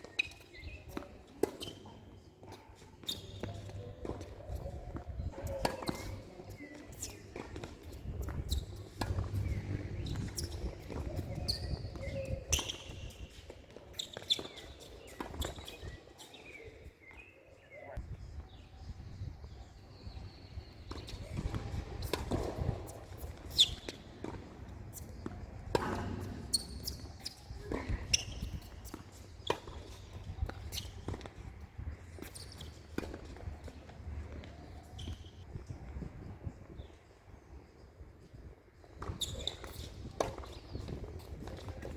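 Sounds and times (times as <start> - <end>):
tennis balls bouncing on court: 0.0 - 15.9, 20.6 - 35.3, 38.9 - 41.9
rackets striking tennis balls: 3.2 - 13.5.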